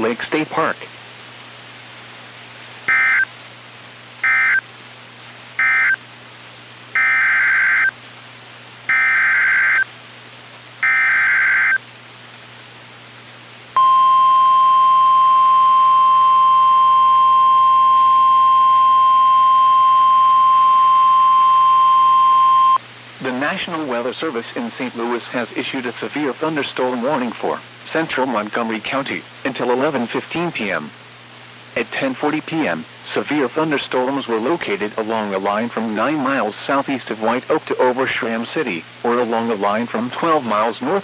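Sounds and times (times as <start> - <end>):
steady loud alarm tone: 2.9 - 3.3, 4.2 - 4.6, 5.6 - 6.0, 7.0 - 7.9, 8.9 - 9.9, 10.8 - 11.8, 13.8 - 22.8
warbling digital data bursts: 10.8 - 11.8.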